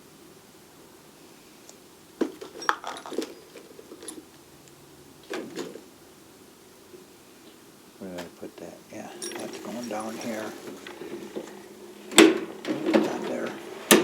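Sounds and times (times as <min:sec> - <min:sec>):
metal tools clinking in toolbox: 0:02.2 - 0:04.4, 0:09.1 - 0:14.0.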